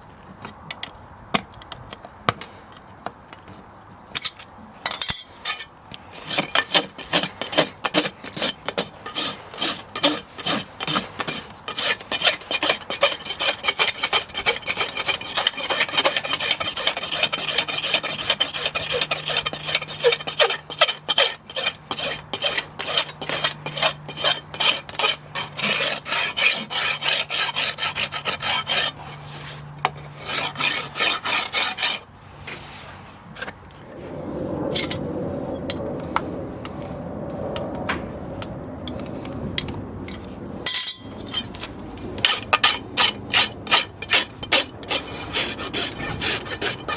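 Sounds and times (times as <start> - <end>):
hoof rasp filing a hoof: 5.2 - 33.2, 42.3 - 46.9.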